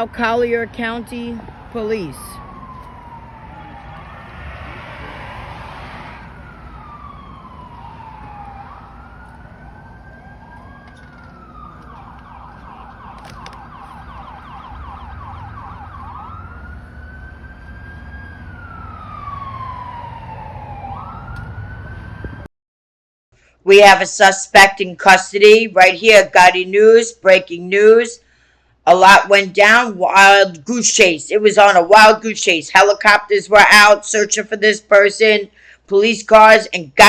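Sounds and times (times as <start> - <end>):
police siren wail and yelp: 0.0 - 22.5
vehicle rumble: 0.0 - 22.5.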